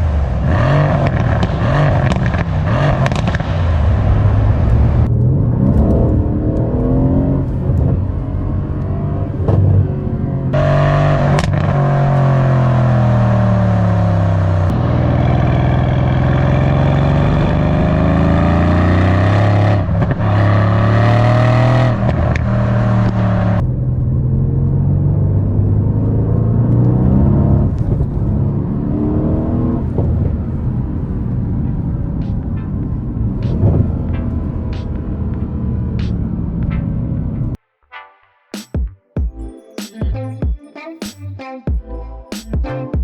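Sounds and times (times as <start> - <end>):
sharp exhaust cracks: 0.0 - 27.0
car engine under load: 0.0 - 37.6.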